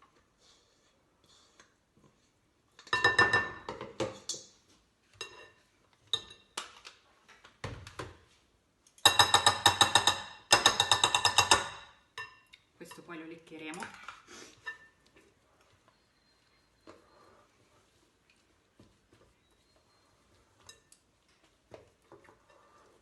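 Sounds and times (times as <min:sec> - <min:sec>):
spoon clinking against mixing bowl: 0:09.0 - 0:13.1.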